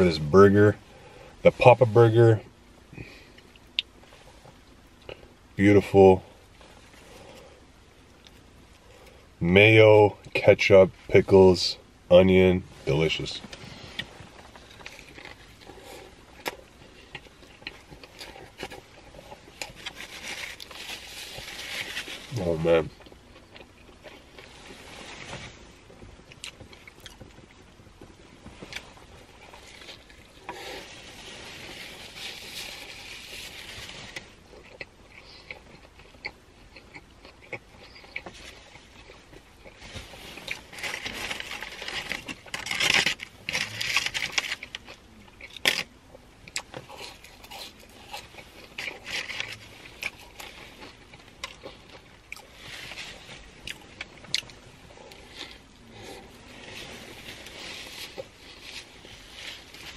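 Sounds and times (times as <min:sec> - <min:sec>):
rustling: 0:12.7 - 0:35.9, 0:37.6 - 0:45.9, 0:46.6 - 0:59.9
person biting and chewing: 0:53.6 - 0:59.0.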